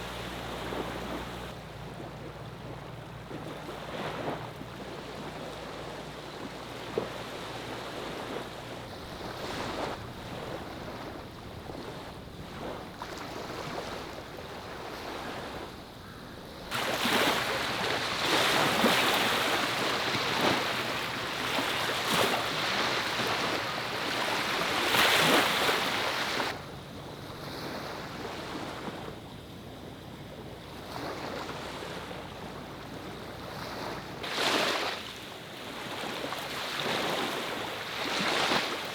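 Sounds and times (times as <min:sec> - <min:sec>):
sea waves washing on shore: 0:00.0 - 0:26.6.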